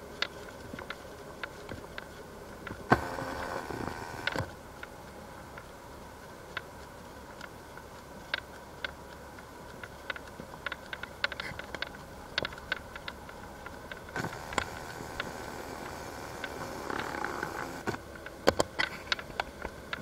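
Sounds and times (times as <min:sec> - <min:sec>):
wind and rain rushing: 0:00.0 - 0:20.0
raindrops ticking on a surface: 0:04.0 - 0:20.0.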